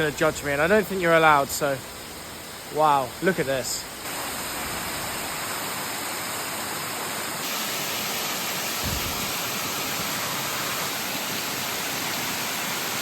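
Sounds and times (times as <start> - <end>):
waterfall pouring: 0.0 - 13.0
low thump: 8.8 - 9.3.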